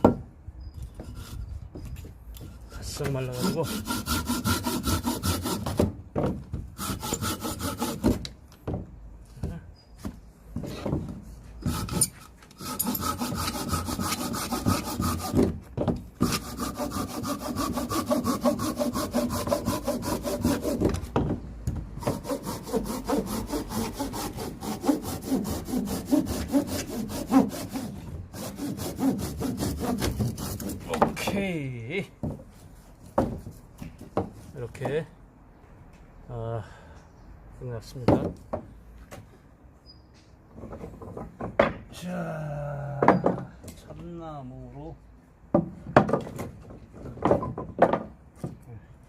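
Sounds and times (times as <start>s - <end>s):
hand saw cutting wood: 2.5s - 5.9s, 6.8s - 8.3s, 11.6s - 15.6s, 16.2s - 21.1s, 22.0s - 31.3s.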